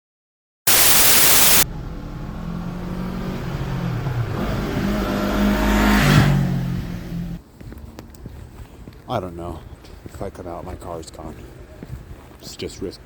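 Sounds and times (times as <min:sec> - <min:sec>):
loud rush of noise: 0:00.7 - 0:01.6
car engine accelerating: 0:00.7 - 0:07.4.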